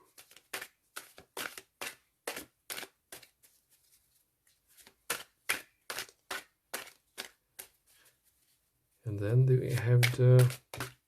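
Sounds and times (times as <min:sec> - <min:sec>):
cards being shuffled: 0:00.1 - 0:08.6, 0:09.6 - 0:11.0.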